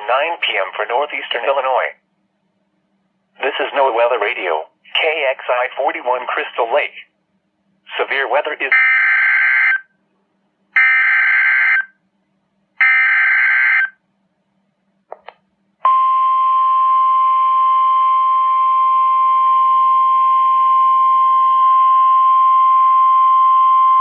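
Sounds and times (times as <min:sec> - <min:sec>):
steady warning alarm tone: 0:08.7 - 0:09.9, 0:10.8 - 0:11.9, 0:12.8 - 0:14.0, 0:15.8 - 0:24.0.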